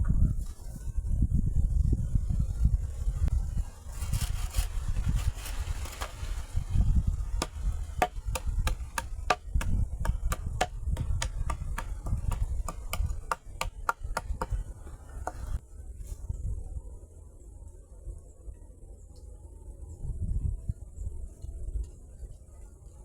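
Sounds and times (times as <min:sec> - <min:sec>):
wind rumble on microphone: 0:00.0 - 0:23.0
sharp chopping knocks: 0:07.4 - 0:15.6.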